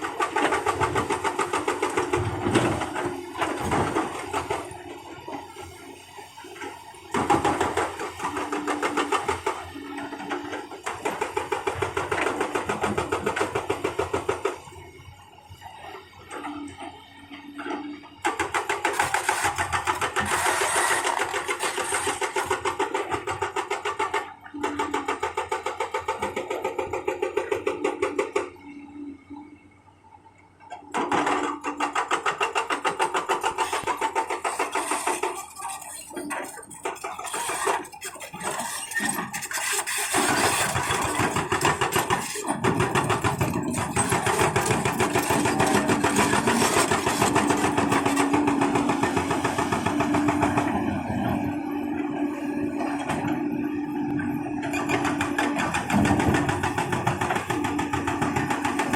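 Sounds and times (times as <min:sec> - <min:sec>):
diesel engine: 0:00.0 - 0:58.9
hydraulic breaker hammering: 0:54.5 - 0:58.9.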